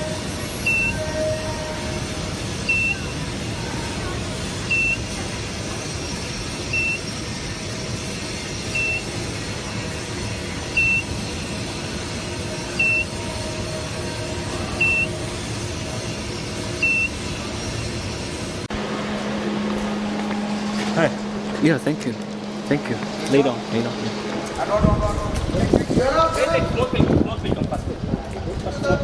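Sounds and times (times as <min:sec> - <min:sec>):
machinery whirr and fan noise: 0:00.0 - 0:29.0
short high electronic beep: 0:18.7 - 0:26.1.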